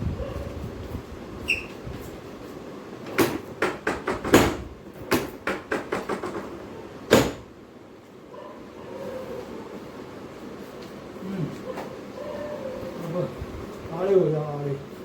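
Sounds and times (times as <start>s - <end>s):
sharp knocks and slaps: 3.1s - 7.5s
loud knock: 3.2s - 6.5s.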